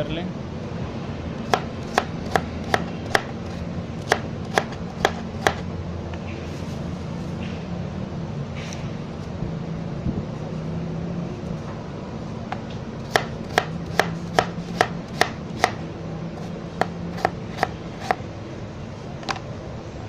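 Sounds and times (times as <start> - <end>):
knife chopping on cutting board: 1.5 - 5.6, 13.1 - 15.8, 16.4 - 18.2.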